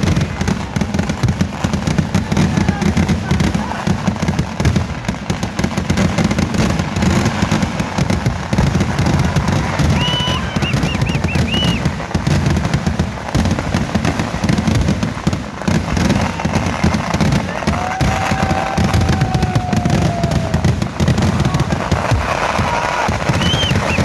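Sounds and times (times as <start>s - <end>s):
rapid firecracker explosions: 0.0s - 24.0s
warbling high whistle: 9.9s - 11.8s, 23.3s - 24.0s.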